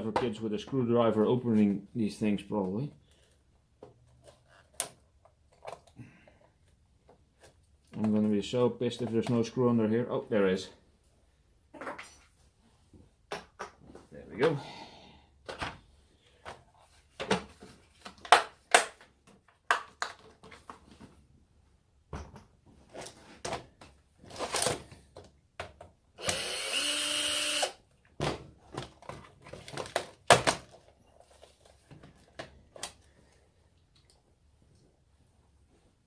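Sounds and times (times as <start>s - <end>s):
power drill whirring: 26.2s - 27.8s.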